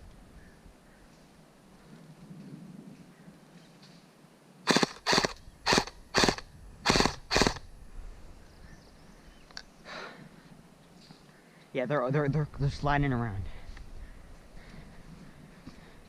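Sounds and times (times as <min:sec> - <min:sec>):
airsoft gun shots: 0:04.7 - 0:07.6.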